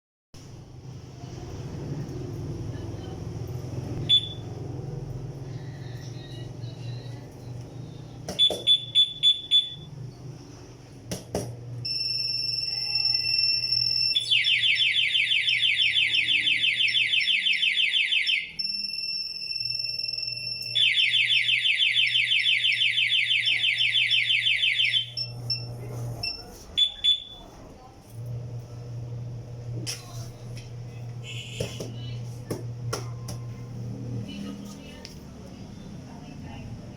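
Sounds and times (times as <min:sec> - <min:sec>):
electronic alarm clock beeping: 0:04.0 - 0:04.6, 0:08.4 - 0:10.0, 0:11.8 - 0:27.4.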